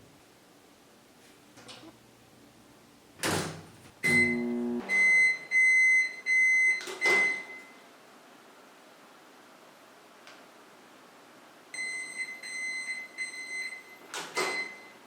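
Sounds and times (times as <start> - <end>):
microwave low hum: 0.0 - 15.0
microwave electronic beeps: 4.0 - 7.8, 11.8 - 15.0.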